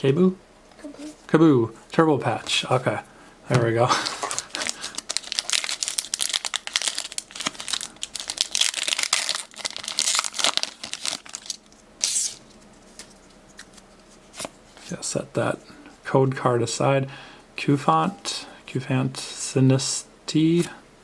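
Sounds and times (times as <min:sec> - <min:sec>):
foil wrapper tearing and crinkling: 0:04.0 - 0:12.4.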